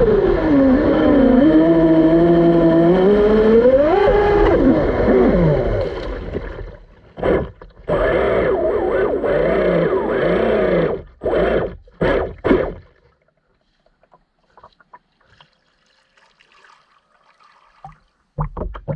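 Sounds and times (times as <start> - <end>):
electric motors whirring: 0.0 - 6.2, 7.2 - 12.6
water rushing past hull: 0.0 - 7.5.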